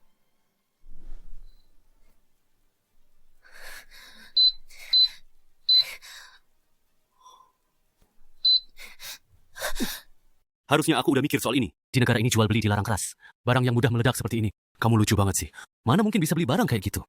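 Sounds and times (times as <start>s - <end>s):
heavy gasping breaths: 3.4s - 6.4s
high electronic beeps: 4.4s - 5.9s, 8.4s - 8.7s.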